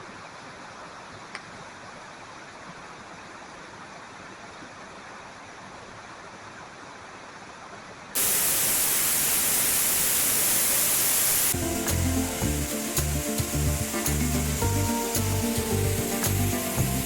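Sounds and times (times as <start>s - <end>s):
rushing falling water: 8.2s - 17.0s
background music with a beat: 11.6s - 17.0s.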